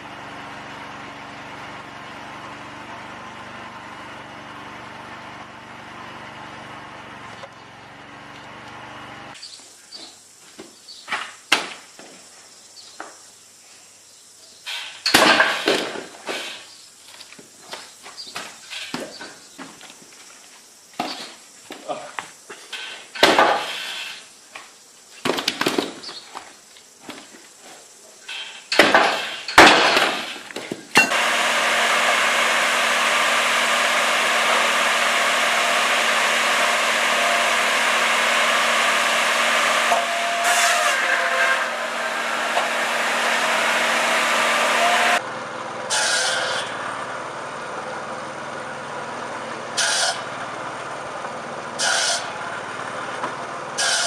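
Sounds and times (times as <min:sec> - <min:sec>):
engine running: 0:00.0 - 0:09.4, 0:28.3 - 0:54.0
loud machine humming: 0:31.0 - 0:54.0.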